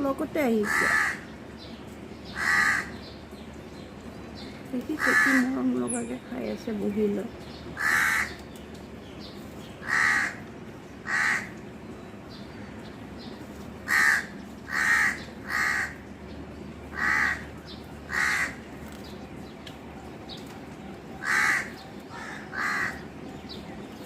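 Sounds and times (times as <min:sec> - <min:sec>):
crow cawing: 0:00.6 - 0:01.3, 0:02.3 - 0:03.0, 0:05.0 - 0:05.6, 0:07.8 - 0:08.4, 0:09.8 - 0:10.4, 0:11.0 - 0:11.6, 0:13.8 - 0:16.1, 0:16.9 - 0:17.5, 0:18.1 - 0:18.6, 0:21.2 - 0:23.0.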